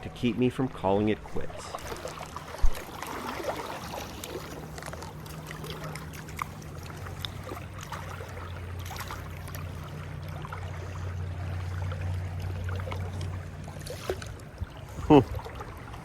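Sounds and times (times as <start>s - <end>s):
low water rumble: 0.0s - 16.0s
river water flowing: 0.0s - 16.0s
small water splashes: 0.2s - 16.0s.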